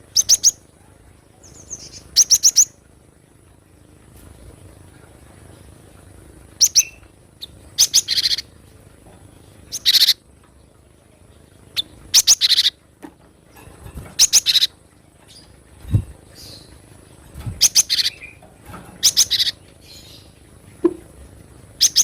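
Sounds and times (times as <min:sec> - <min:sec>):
bird chirping calls: 0:00.0 - 0:00.6, 0:01.4 - 0:02.8, 0:06.6 - 0:08.6, 0:09.6 - 0:10.2, 0:11.7 - 0:12.8, 0:14.2 - 0:16.9, 0:17.6 - 0:18.4, 0:19.0 - 0:20.4, 0:21.8 - 0:22.0.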